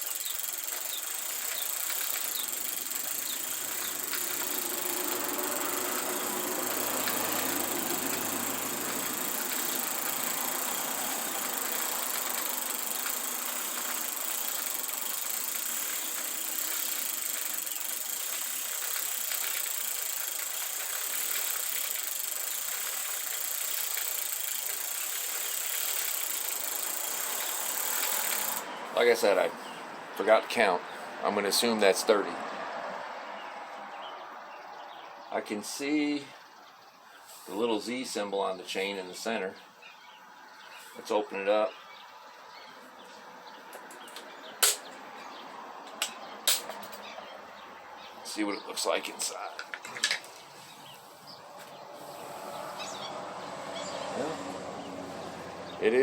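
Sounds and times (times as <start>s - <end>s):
bicycle chain running through scrubber: 0.0s - 28.6s.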